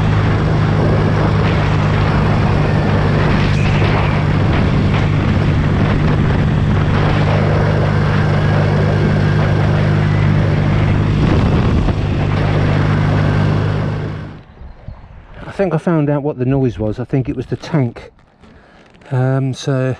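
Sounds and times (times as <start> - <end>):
motorcycle engine running: 0.0 - 14.4.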